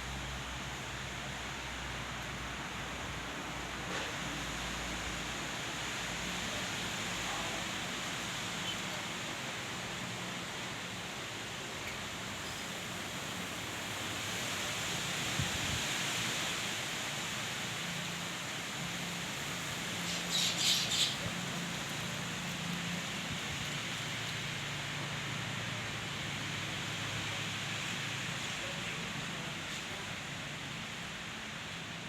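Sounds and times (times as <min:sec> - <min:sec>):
light drizzle: 0:00.0 - 0:32.0
gusting wind: 0:15.2 - 0:16.4
bird chirping: 0:20.1 - 0:21.2.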